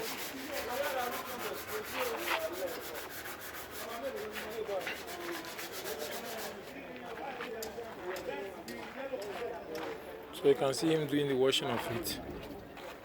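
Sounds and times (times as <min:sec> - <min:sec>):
hand sanding strokes: 0:00.0 - 0:06.8.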